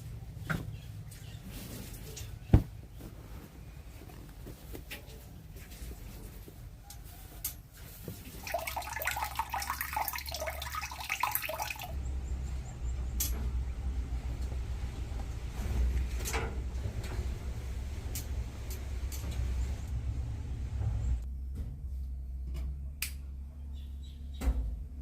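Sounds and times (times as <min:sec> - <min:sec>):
water splashing: 0:08.2 - 0:12.0
low rumble: 0:11.9 - 0:22.1.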